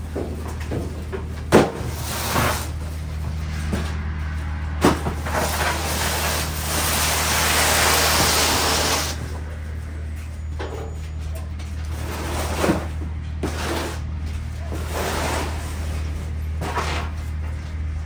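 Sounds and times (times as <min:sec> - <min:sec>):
low drone of idling vehicle: 0:00.0 - 0:18.0
rushing sliding noise: 0:01.7 - 0:09.5, 0:11.9 - 0:17.5.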